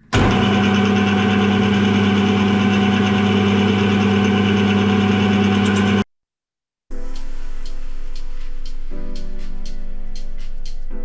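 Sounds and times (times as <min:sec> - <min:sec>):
metal lathe humming: 0:00.0 - 0:06.0.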